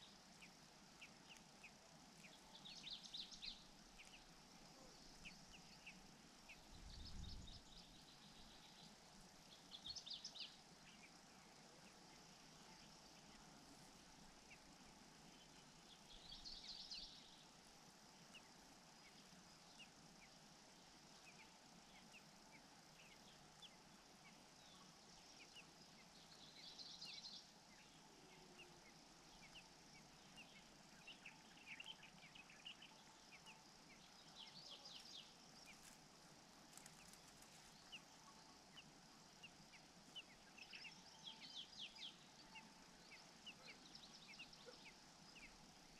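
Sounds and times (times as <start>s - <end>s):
bird chirps: 0.0s - 13.6s, 21.1s - 45.9s
steady background hiss: 0.0s - 45.9s.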